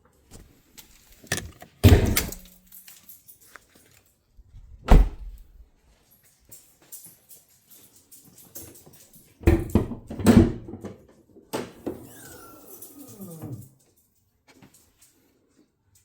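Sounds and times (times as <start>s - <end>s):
handling clicks and rustling: 0.1s - 4.2s.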